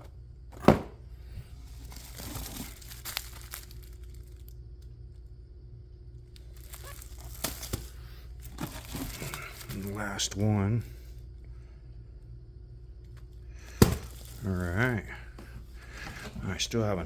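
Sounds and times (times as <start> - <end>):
plastic wrapping crinkling: 1.5 - 4.6, 6.4 - 10.0, 13.8 - 15.1.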